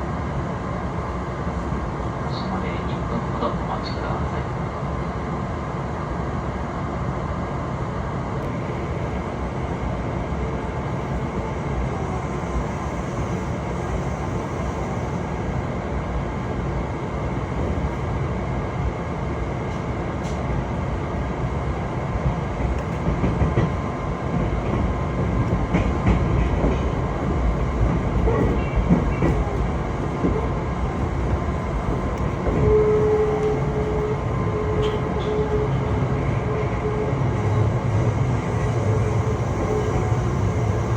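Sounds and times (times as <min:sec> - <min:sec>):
train wheels rumbling on rails: 0:08.4 - 0:40.9.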